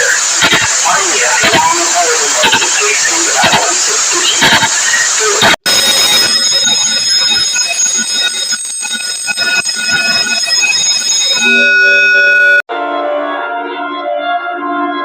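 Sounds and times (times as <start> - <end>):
alarm bell ringing: 5.7 - 12.6
held multi-note alarm tone: 5.7 - 15.0.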